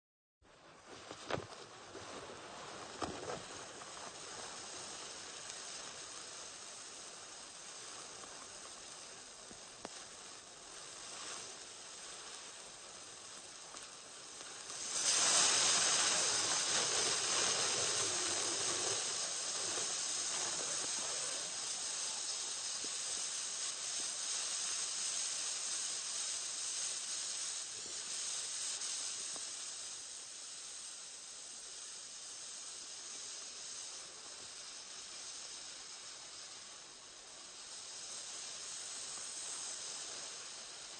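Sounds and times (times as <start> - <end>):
burning fuse hissing: 0.5 - 40.9
sharp crackles: 0.7 - 40.9.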